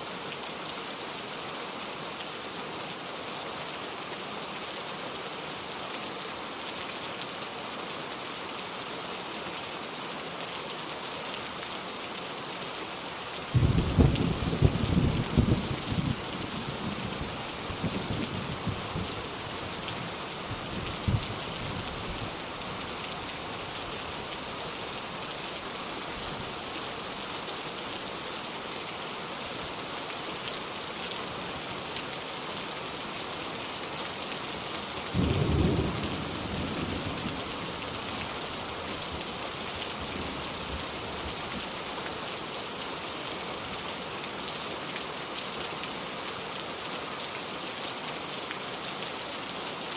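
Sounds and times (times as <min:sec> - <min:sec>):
steady rain falling: 0:00.0 - 0:49.9
thunder rumbling: 0:13.6 - 0:19.1.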